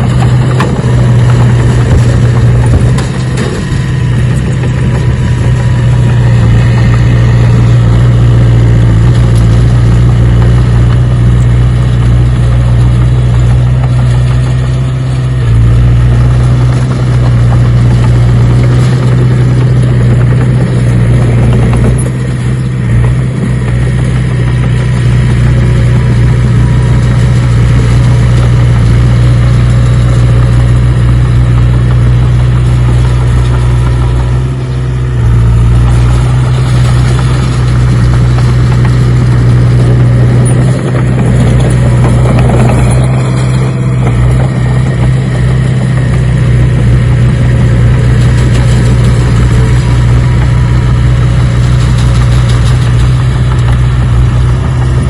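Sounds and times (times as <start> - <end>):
engine running with low hum: 0.0 - 55.0.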